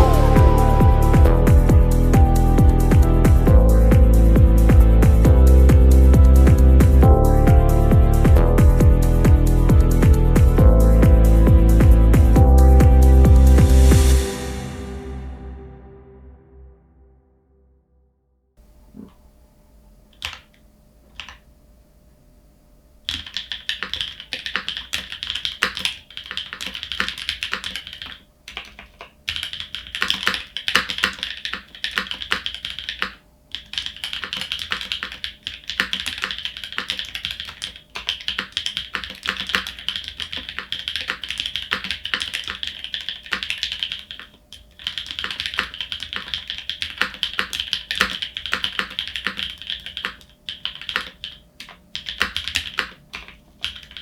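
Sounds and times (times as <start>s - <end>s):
mechanical keyboard typing: 20.1s - 21.4s, 23.1s - 54.0s.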